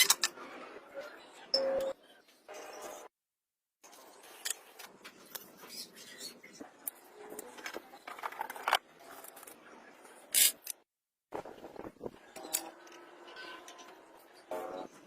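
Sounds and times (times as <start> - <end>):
small craft parts clicking and scraping: 6.8 - 9.6, 10.3 - 10.8, 12.3 - 14.2.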